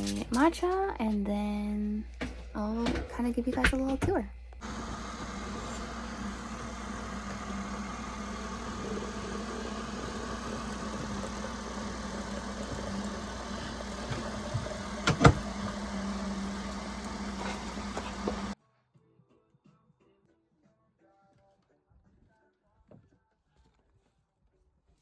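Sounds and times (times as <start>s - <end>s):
engine humming: 2.0s - 18.6s.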